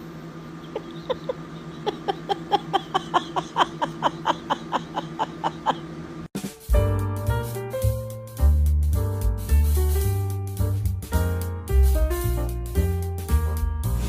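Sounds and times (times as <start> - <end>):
steady low hum: 0.0 - 6.3
person giggling: 0.6 - 6.1
music: 6.4 - 14.0.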